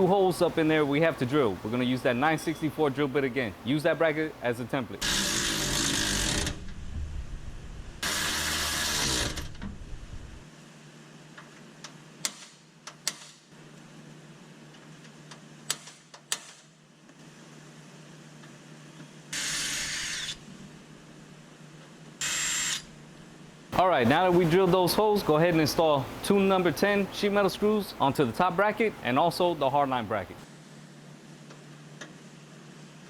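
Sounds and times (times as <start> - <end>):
power drill boring sheet metal: 5.0 - 6.7, 8.0 - 9.7, 19.3 - 20.5, 22.2 - 22.9.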